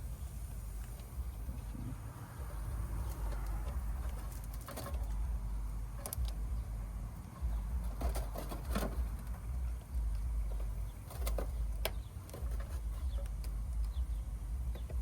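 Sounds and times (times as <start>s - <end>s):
steady low rumble: 0.0s - 15.0s
wire leads clicking and rustling: 3.0s - 6.6s, 7.2s - 15.0s.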